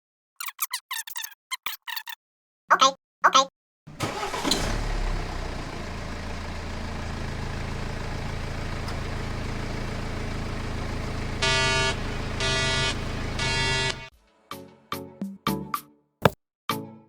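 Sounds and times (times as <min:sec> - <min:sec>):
small engine humming: 0:03.9 - 0:14.1
horn toots: 0:11.4 - 0:14.1.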